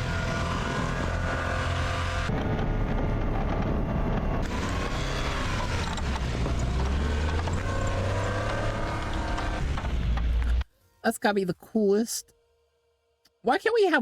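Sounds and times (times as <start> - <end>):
small truck engine running: 0.0 - 10.6.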